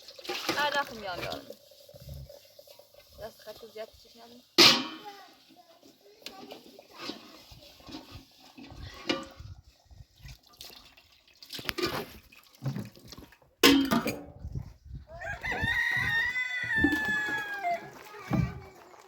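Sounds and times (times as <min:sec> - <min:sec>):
rooster crowing: 0:15.1 - 0:18.0.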